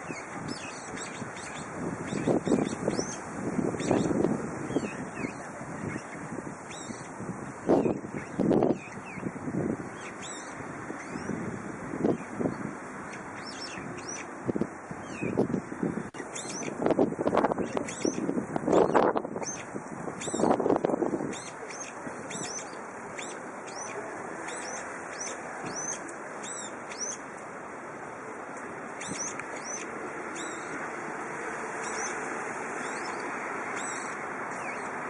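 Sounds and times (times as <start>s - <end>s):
high bird chirps: 0.0s - 3.2s, 3.8s - 7.1s, 9.9s - 11.4s, 12.1s - 14.3s, 16.2s - 16.8s, 17.6s - 20.6s, 21.2s - 27.2s, 29.0s - 30.8s, 31.8s - 32.2s, 32.8s - 35.0s
wind noise on microphone: 0.0s - 28.0s, 28.7s - 35.0s.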